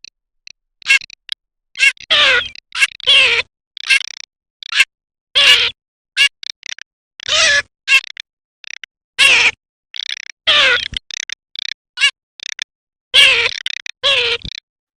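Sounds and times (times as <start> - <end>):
duck calling: 1.8 - 8.2, 9.2 - 10.9, 13.2 - 14.6.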